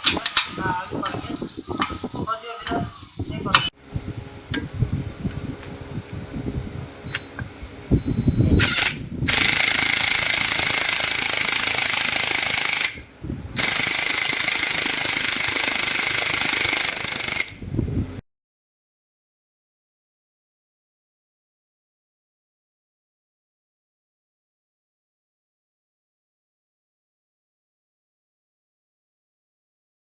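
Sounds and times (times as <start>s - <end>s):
parts clattering: 0.0s - 0.6s
pneumatic air tool running: 0.0s - 0.6s, 8.0s - 17.6s.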